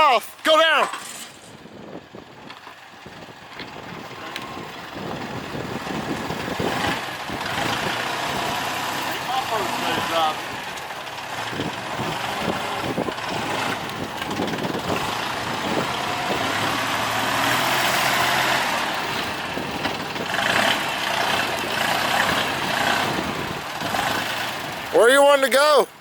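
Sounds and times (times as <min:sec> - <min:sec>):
tractor diesel engine under load: 0:00.0 - 0:26.0.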